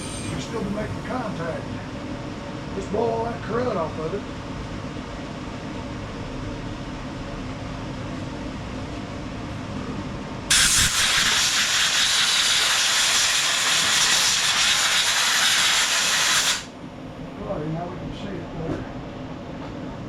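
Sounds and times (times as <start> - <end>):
steady low hum: 0.0 - 14.6, 16.6 - 20.0
air blow gun hissing: 10.5 - 16.7.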